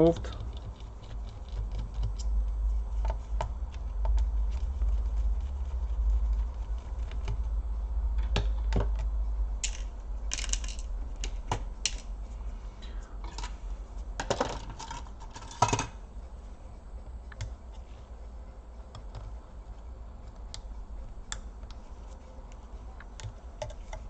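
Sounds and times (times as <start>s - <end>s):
low steady hum: 0.0s - 24.0s.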